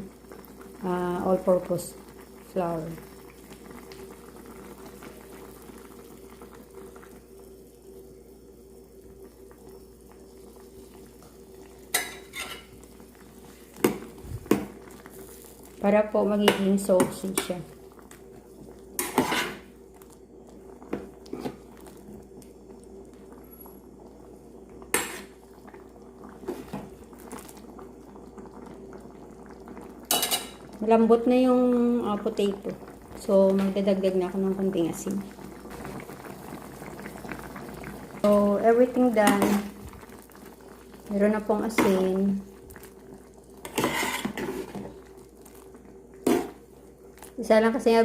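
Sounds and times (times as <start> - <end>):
water bubbling in a pan: 0.0 - 48.0.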